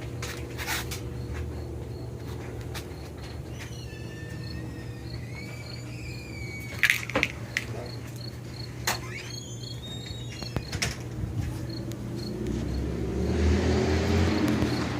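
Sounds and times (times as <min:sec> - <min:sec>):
crickets chirping: 0:00.0 - 0:14.9
low engine sound: 0:11.0 - 0:14.9.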